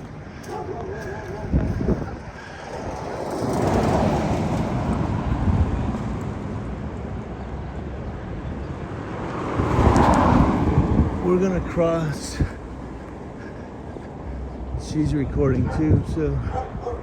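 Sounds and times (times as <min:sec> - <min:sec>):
car driving past: 0:08.9 - 0:11.2.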